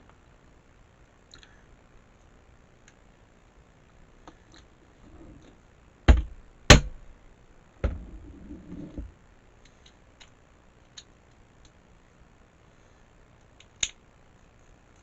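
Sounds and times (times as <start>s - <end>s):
sharp knocks: 6.1s - 7.0s.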